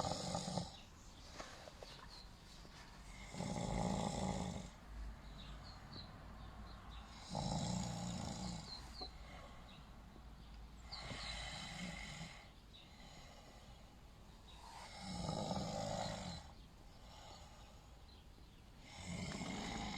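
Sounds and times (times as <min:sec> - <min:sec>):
man snoring: 0:00.0 - 0:00.8, 0:03.1 - 0:04.8, 0:07.1 - 0:08.7, 0:11.0 - 0:12.5, 0:14.8 - 0:16.6, 0:18.8 - 0:19.9.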